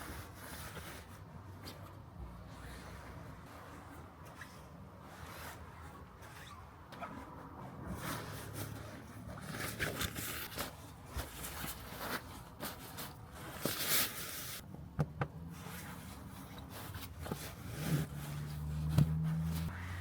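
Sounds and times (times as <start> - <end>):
rustling of things handled: 0.0 - 14.6, 15.5 - 19.7.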